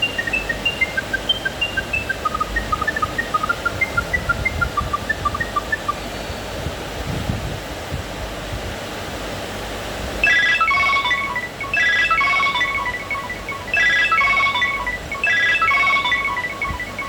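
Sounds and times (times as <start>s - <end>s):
electronic ringtone melody: 0.0s - 6.0s, 10.2s - 17.0s.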